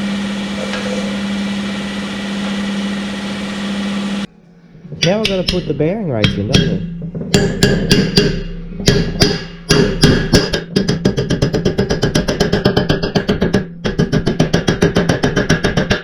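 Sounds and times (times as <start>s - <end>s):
metal hub ringing: 5.0s - 11.3s.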